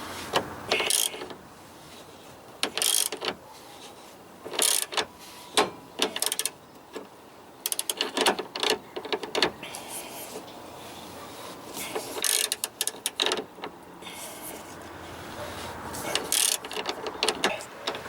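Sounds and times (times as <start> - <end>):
ratchet wrench clicking: 0.7 - 1.3, 2.6 - 3.3, 4.5 - 5.0, 6.0 - 6.6, 7.7 - 8.8, 12.1 - 13.4, 16.1 - 18.0.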